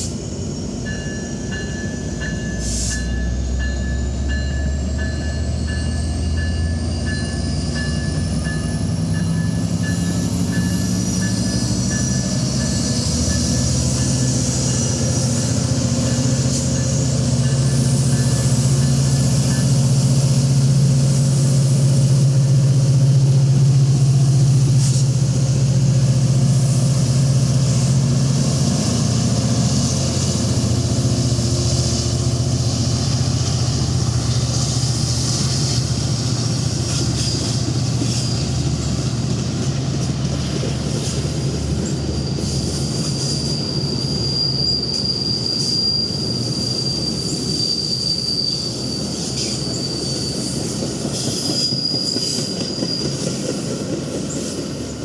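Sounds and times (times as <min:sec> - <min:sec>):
rolling train wheels: 0:00.0 - 0:55.0
train rumbling past: 0:00.0 - 0:55.0
high wheel squeal: 0:04.6 - 0:25.1, 0:26.7 - 0:40.1, 0:40.9 - 0:55.0.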